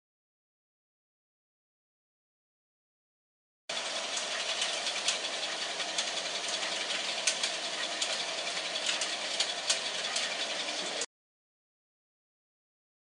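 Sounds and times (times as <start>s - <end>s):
toy train whirring on track: 3.7s - 11.1s
clicks and rattles: 4.1s - 11.0s.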